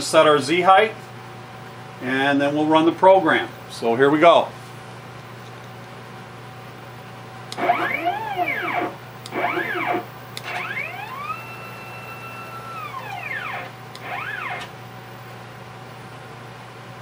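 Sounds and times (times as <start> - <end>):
steady low hum: 0.9 - 17.0
stepper motors whining: 7.6 - 14.8.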